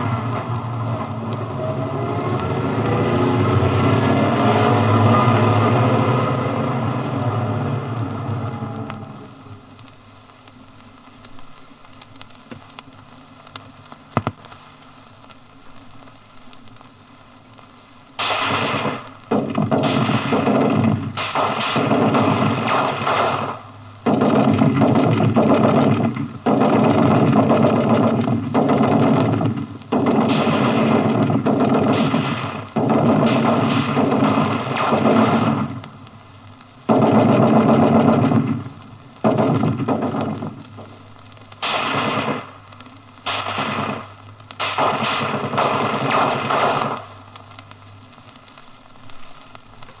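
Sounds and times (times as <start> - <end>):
faint hiss: 6.2 - 50.0
machine gun firing bursts: 18.2 - 47.6.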